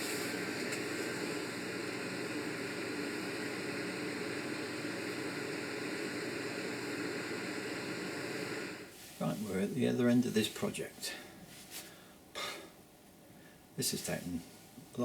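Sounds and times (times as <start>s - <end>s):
wood lathe whirring: 0.1s - 8.9s.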